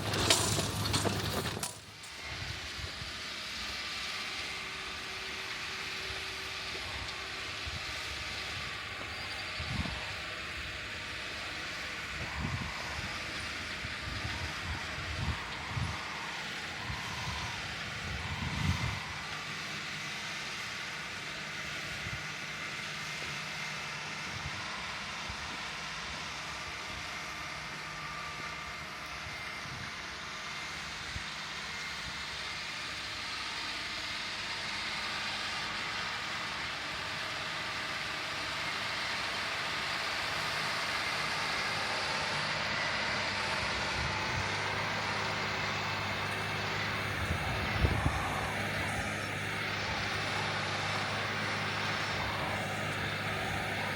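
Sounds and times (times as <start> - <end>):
tractor diesel engine drone: 0.0 - 53.9
wind buffeting microphone: 46.9 - 49.1.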